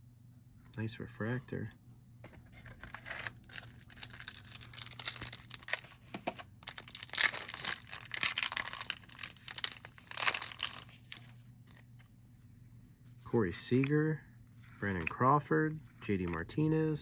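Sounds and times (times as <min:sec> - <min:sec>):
cards rustling: 0:02.2 - 0:12.2, 0:13.0 - 0:14.0, 0:14.6 - 0:16.7
foil wrapper crinkling and tearing: 0:02.6 - 0:11.9.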